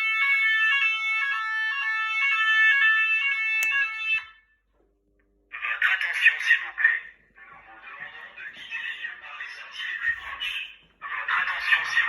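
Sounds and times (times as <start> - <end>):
fire alarm electronic tone: 0.0 - 4.5
sharp click: 3.6 - 3.9.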